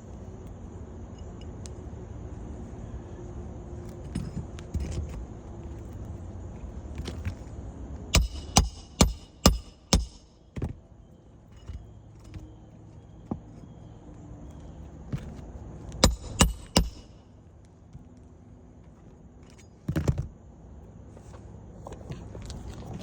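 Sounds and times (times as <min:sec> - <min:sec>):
sharp metallic strikes: 0:08.2 - 0:10.3.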